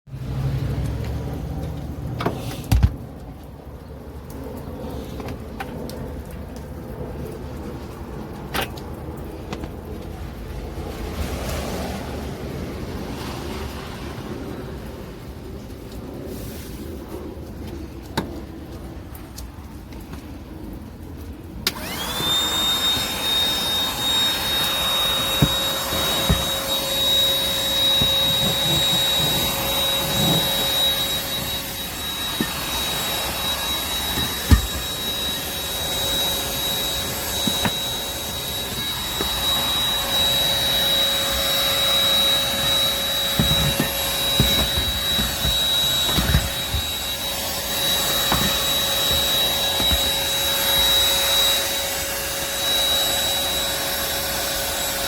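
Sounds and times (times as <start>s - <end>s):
handheld vacuum motor whining: 21.7s - 55.0s.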